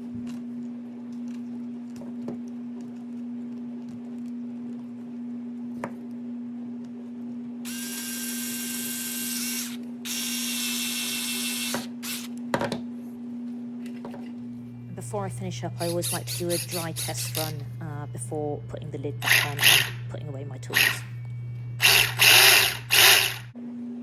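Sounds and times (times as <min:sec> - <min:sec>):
power screwdriver whirring: 0:07.7 - 0:12.3, 0:16.0 - 0:17.6, 0:19.2 - 0:20.0, 0:20.7 - 0:21.1, 0:21.8 - 0:23.5.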